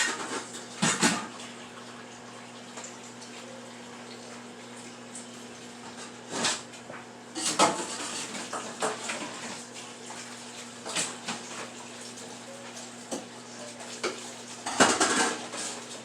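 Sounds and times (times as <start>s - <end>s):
dishes and utensils clattering: 7.4s - 9.4s, 13.1s - 15.9s.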